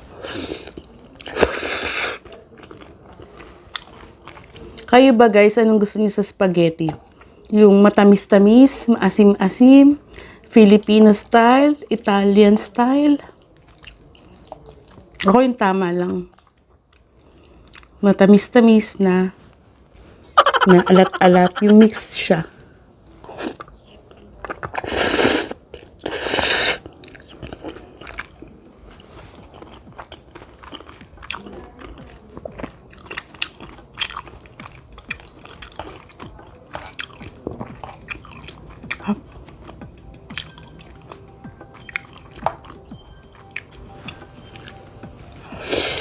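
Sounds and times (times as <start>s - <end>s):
wet chewing: 0.6s - 4.9s, 13.2s - 15.3s, 23.4s - 44.8s.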